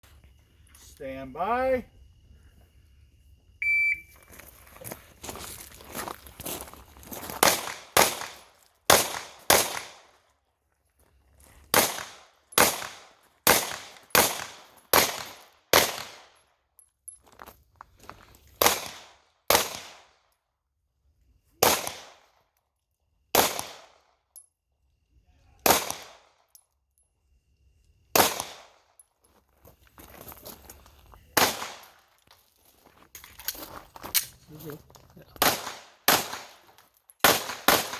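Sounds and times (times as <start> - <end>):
pistol shots: 7.4 - 10.0, 11.7 - 16.3, 18.6 - 20.1, 21.6 - 22.2, 23.3 - 24.0, 25.6 - 26.3, 28.2 - 28.8, 31.4 - 32.0, 35.4 - 36.6, 37.2 - 37.9.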